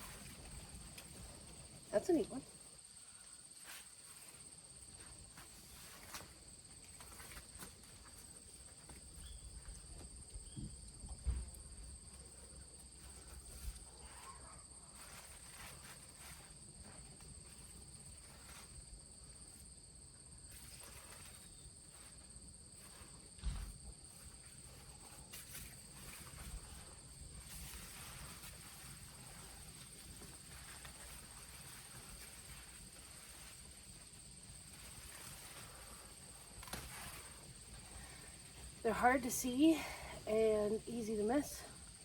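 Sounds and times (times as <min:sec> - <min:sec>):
leaves rustling: 0:00.0 - 0:09.4, 0:12.8 - 0:19.8, 0:20.4 - 0:42.0
footsteps: 0:22.8 - 0:33.9.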